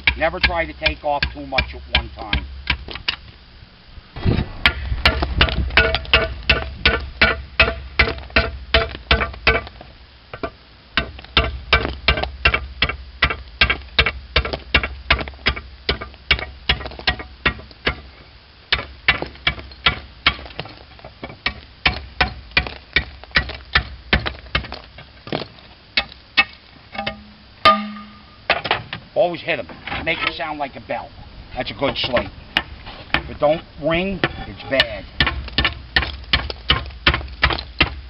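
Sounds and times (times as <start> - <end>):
hammer chopping slate: 4.6 - 9.7, 34.8 - 38.0.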